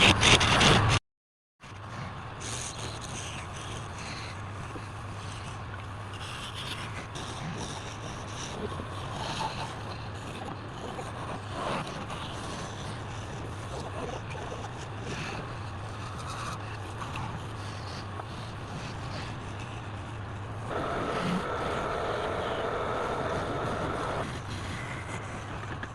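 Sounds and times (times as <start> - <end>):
lathe motor hum: 19.3 - 25.9
turning tool scraping wood: 20.6 - 25.9.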